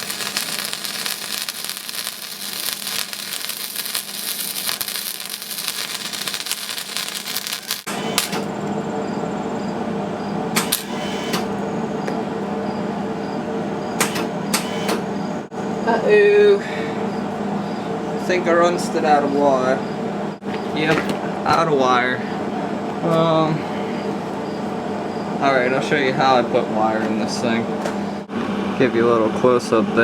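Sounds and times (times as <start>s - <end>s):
welding arc crackling: 0.0s - 8.5s, 10.6s - 11.6s
welder humming: 0.0s - 29.1s
sharp clicks: 10.6s - 11.5s, 14.0s - 15.0s.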